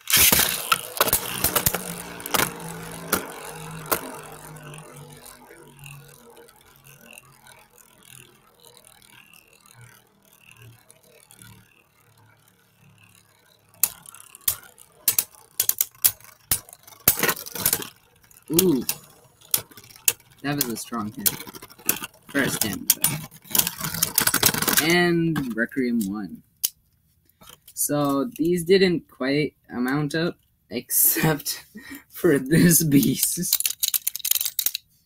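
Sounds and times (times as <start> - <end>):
plastic tops clacking: 0.0 - 5.8, 13.8 - 26.8, 32.9 - 34.9
spinning tops launched with rattle: 0.0 - 28.8, 32.2 - 35.0
spinning tops whirring: 0.0 - 28.9, 29.7 - 35.0.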